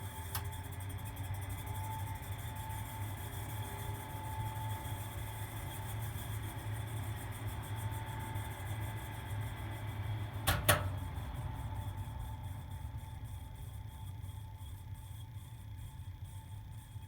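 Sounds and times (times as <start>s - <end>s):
fan whine: 9.6s - 16.2s
ventilation fan humming: 9.8s - 13.2s
sharp clicks: 10.5s - 11.0s.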